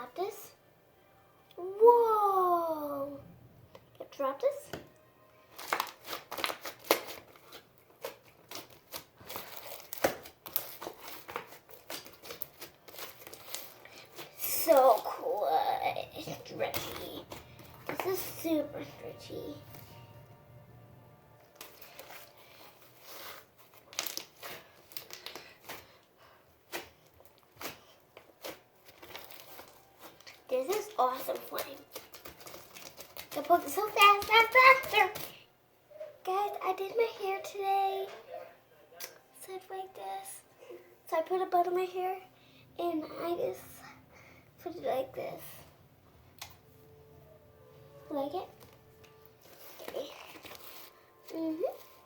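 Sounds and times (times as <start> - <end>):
crunchy slime crackling and snapping: 5.5 - 15.2, 21.5 - 26.0, 26.7 - 35.3.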